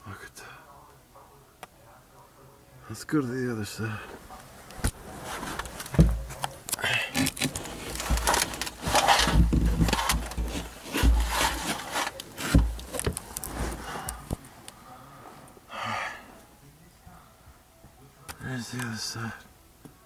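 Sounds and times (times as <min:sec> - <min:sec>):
heavy thumps: 0:04.8 - 0:06.4, 0:07.1 - 0:14.4.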